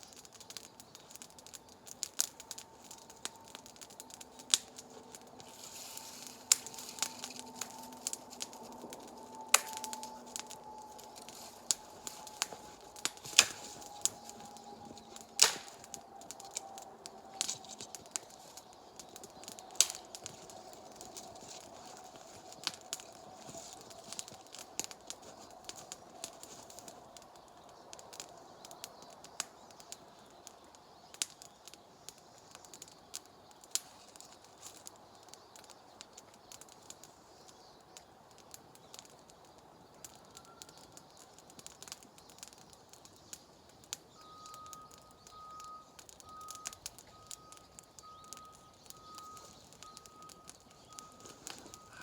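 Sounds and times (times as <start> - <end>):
wood fire crackling: 0.0 - 52.0
sharp pops: 0.1 - 26.8.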